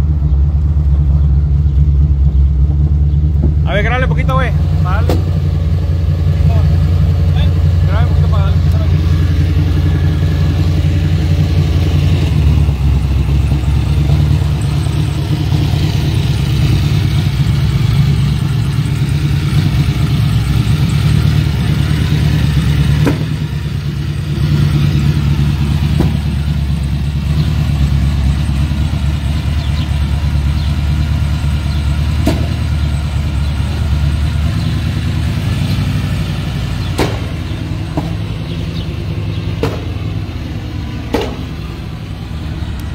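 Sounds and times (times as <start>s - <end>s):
deep exhaust rumble: 0.0s - 42.9s
sharp exhaust pops: 3.2s - 5.6s, 6.5s - 26.7s, 29.6s - 33.7s, 34.4s - 41.8s.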